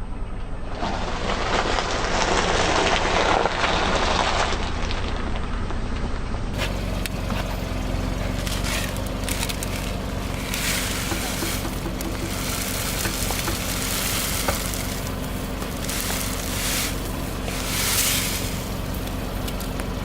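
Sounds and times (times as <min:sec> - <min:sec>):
tyre crunching brittle objects: 0:00.8 - 0:05.4, 0:06.6 - 0:20.0
fine crackling and snapping: 0:00.8 - 0:05.6, 0:08.2 - 0:20.0
car engine humming: 0:06.5 - 0:20.0.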